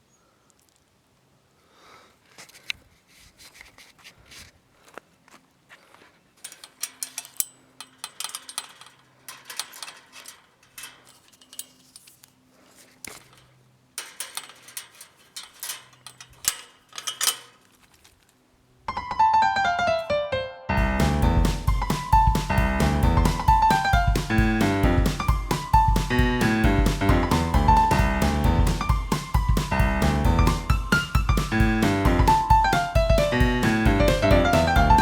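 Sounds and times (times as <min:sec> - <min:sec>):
metallic rattling and clinking: 0:06.4 - 0:18.2, 0:21.2 - 0:35.0
piano music: 0:18.9 - 0:35.0.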